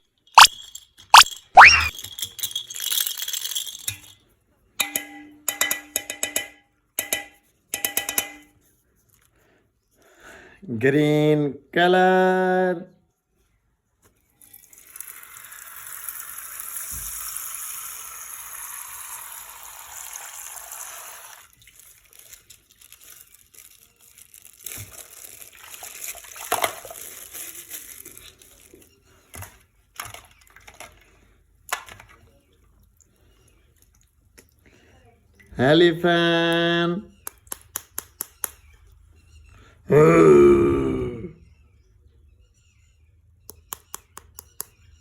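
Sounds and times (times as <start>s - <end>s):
water pouring out: 14.8s - 23.3s, 24.6s - 27.6s
wet plastic bag crinkling: 21.4s - 28.9s.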